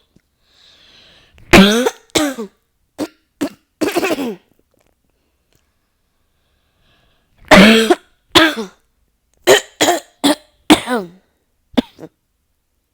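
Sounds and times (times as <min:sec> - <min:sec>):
person coughing: 0:01.5 - 0:04.5, 0:07.5 - 0:08.8, 0:09.5 - 0:11.2, 0:11.8 - 0:12.2.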